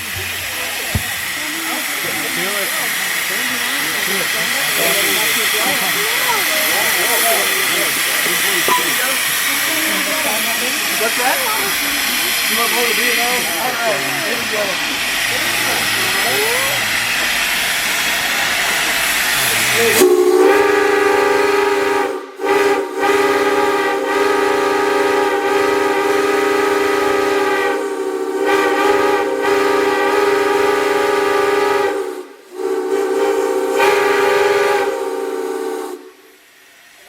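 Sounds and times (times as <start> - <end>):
steam hissing: 0.0 - 37.0
steam whistle blast: 8.6 - 10.0, 19.5 - 36.2.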